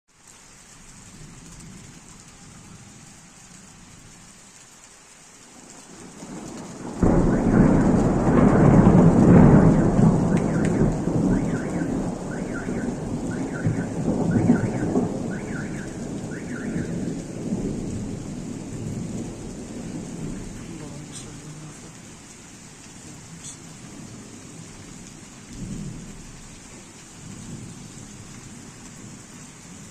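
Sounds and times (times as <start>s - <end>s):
heavy rain falling: 0.1s - 29.9s
rolling thunderclap: 5.6s - 22.2s, 23.1s - 29.9s.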